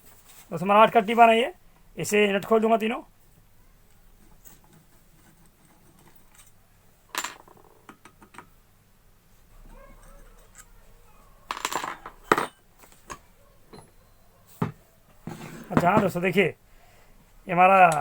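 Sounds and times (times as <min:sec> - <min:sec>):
spanner clinking on metal: 0:11.5 - 0:14.0.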